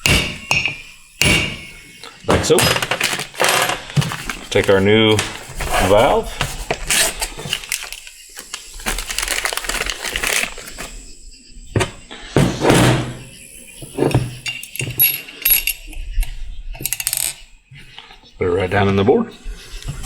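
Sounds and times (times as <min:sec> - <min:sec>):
rustling: 0:02.2 - 0:13.3
small metal parts clinking: 0:02.4 - 0:05.3, 0:06.9 - 0:10.9, 0:14.4 - 0:17.4.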